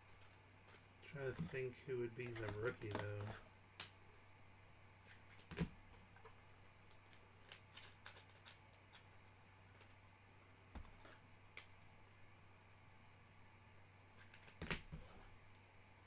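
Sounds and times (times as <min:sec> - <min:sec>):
trading cards clicking and tapping: 0:02.2 - 0:04.0.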